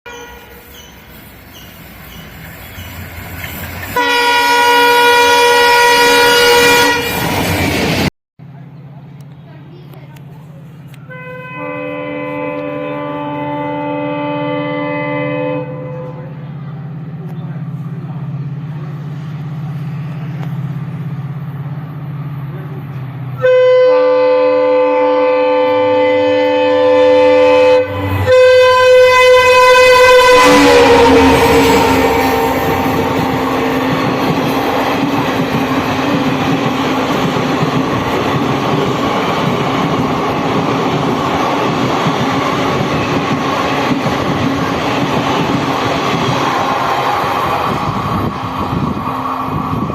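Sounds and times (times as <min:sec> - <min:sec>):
train horn blast: 0:00.1 - 0:00.7, 0:04.0 - 0:07.4, 0:11.0 - 0:16.5, 0:23.4 - 0:36.2
diesel locomotive engine hum: 0:00.1 - 0:49.9
train rushing past: 0:00.1 - 0:49.9.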